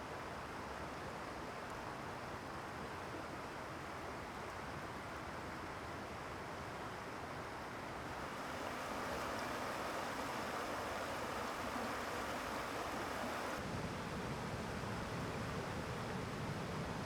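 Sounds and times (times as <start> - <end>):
stream rushing over rocks: 8.1 - 13.6.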